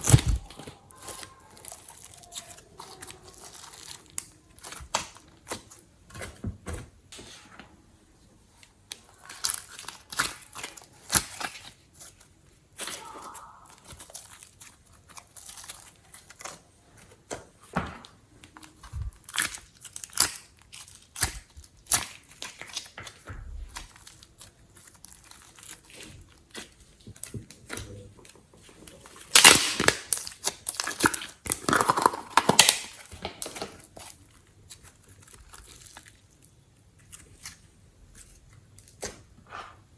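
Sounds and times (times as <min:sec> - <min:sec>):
slime crackling and popping: 0:00.0 - 0:06.2, 0:08.6 - 0:17.3, 0:18.4 - 0:39.3.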